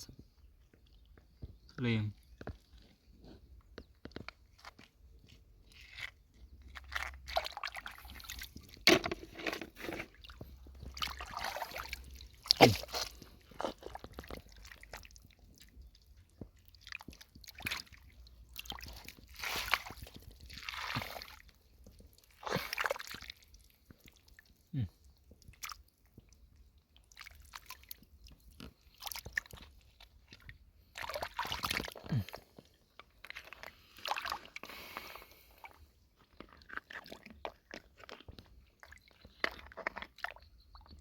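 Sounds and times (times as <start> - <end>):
water splashing and squelching: 0.0 - 41.0.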